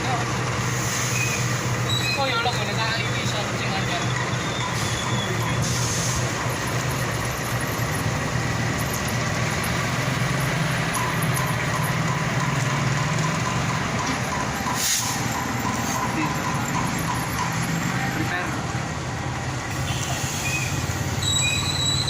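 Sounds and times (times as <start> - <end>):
diesel engine droning: 0.0 - 22.0
short hiss: 14.8 - 15.2.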